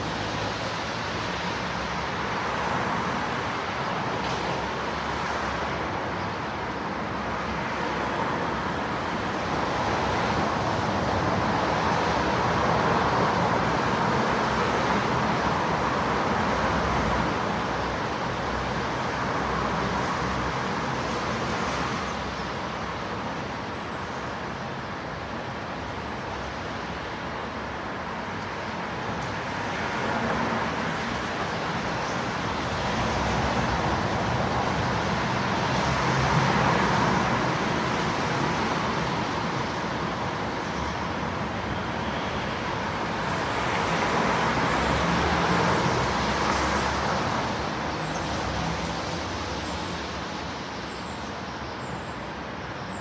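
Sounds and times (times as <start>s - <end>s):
vehicles passing on wet road: 0.0s - 53.0s.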